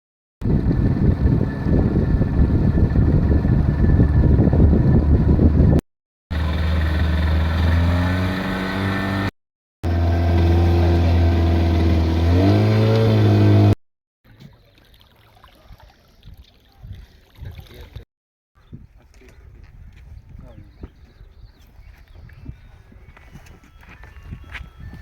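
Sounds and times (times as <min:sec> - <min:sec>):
engine running: 0:00.4 - 0:13.8.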